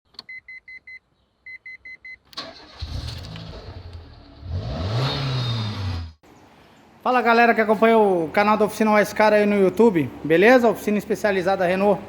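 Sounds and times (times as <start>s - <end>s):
car engine starting and running: 2.3s - 6.2s.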